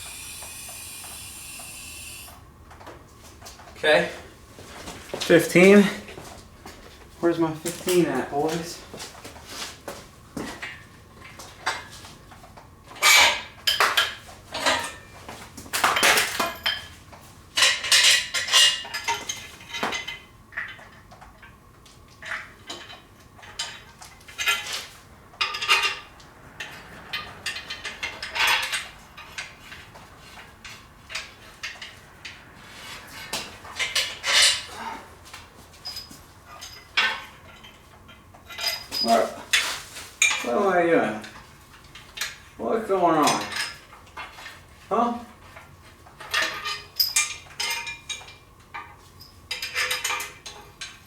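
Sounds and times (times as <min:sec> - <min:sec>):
steel tools clinking and clattering: 0:22.2 - 0:26.0, 0:35.8 - 0:40.5, 0:43.2 - 0:44.6, 0:46.2 - 0:51.0.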